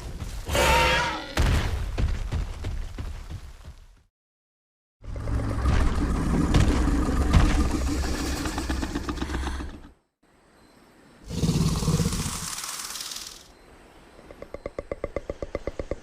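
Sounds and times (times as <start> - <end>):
rumbling rattling creature growl: 5.0 - 10.0, 11.3 - 13.5.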